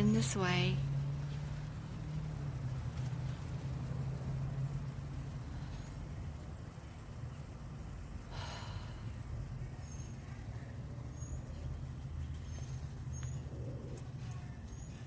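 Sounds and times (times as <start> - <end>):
steady low rumble: 0.0 - 15.0
breathy exhale: 8.3 - 9.1
faint bird chirps: 9.6 - 15.0.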